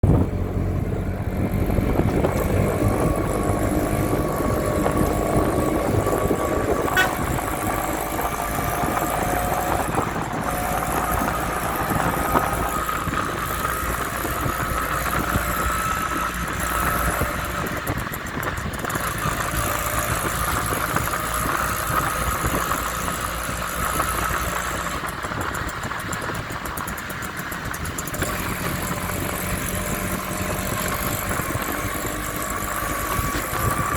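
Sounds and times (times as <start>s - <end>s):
vehicle engine and road noise: 0.0s - 33.9s.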